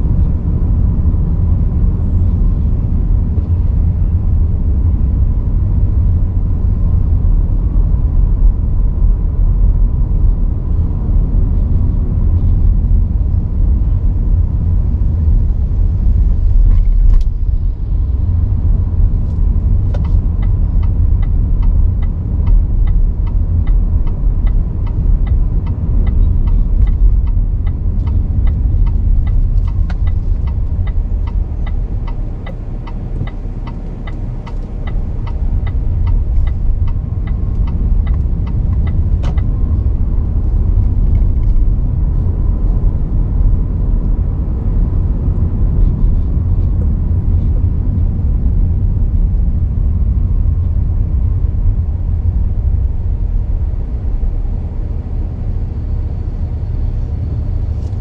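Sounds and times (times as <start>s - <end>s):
car road and engine rumble: 0.0s - 58.0s
even ticking: 19.3s - 41.4s.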